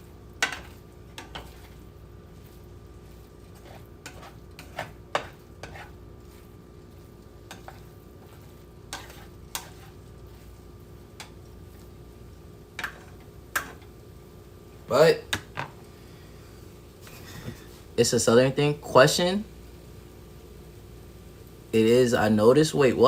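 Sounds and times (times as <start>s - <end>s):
utensil scraping frying pan: 0.0s - 12.1s, 12.7s - 14.0s
frying hiss: 0.0s - 23.0s.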